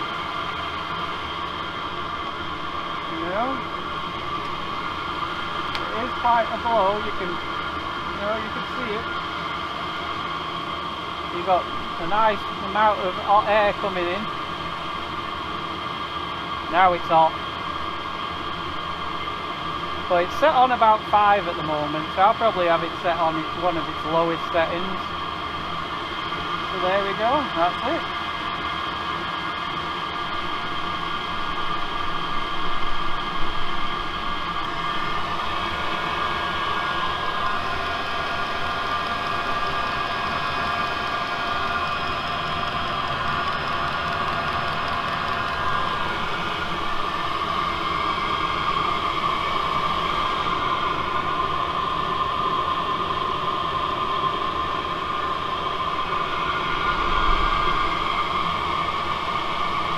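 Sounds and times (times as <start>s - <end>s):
heater blower fan whirring: 0.0s - 59.9s.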